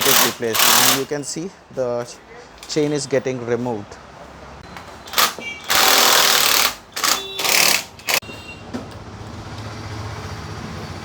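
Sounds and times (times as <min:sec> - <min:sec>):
pneumatic tool bursts: 0:00.0 - 0:01.1, 0:05.1 - 0:08.2.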